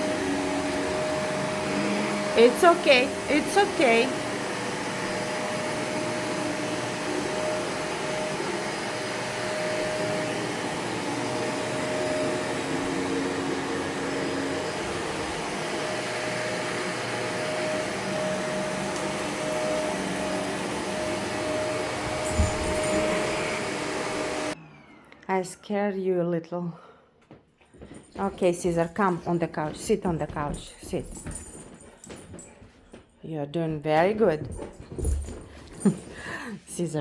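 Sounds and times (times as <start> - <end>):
vacuum cleaner running: 0.0 - 25.8.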